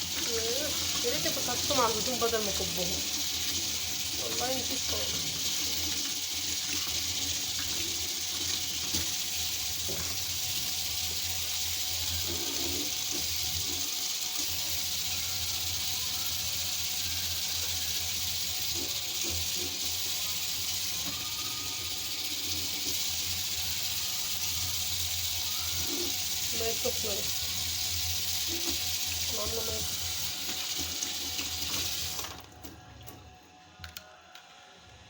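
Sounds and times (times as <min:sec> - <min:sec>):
water running from a tap: 0:00.0 - 0:32.5.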